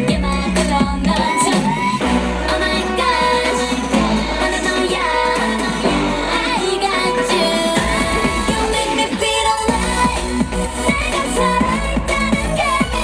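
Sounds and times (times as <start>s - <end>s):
female group vocals: 0.0s - 13.0s
heavy bass line: 0.0s - 13.0s
pop dance song: 0.0s - 13.0s.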